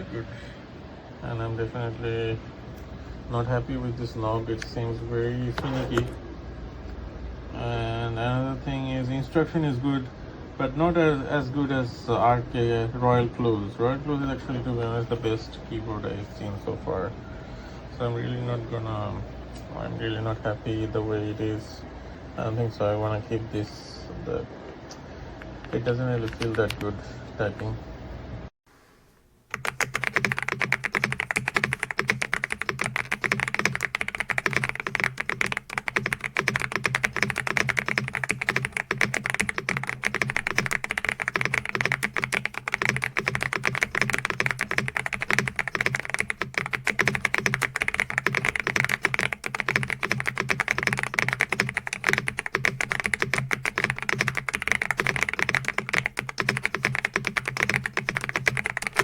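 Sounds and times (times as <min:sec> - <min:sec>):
fast typing on mechanical keyboard: 0:26.2 - 0:26.8, 0:29.5 - 0:59.0.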